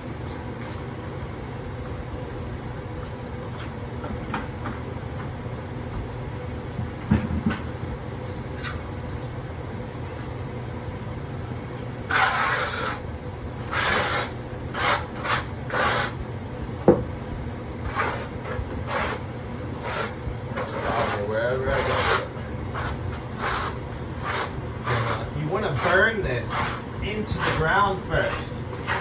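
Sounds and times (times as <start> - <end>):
steady low hum: 0.0 - 29.0
steel trowel scraping mortar: 12.1 - 13.0, 13.6 - 16.2, 18.9 - 19.2, 19.8 - 29.0.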